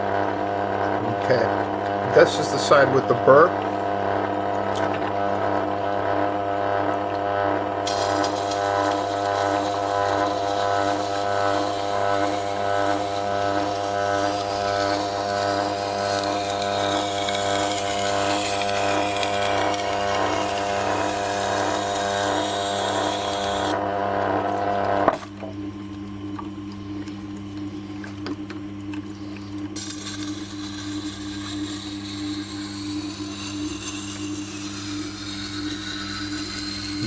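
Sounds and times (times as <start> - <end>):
wet grinder humming: 0.0 - 37.0
steel grinding on stone: 1.0 - 5.1, 7.4 - 23.8, 29.8 - 37.0.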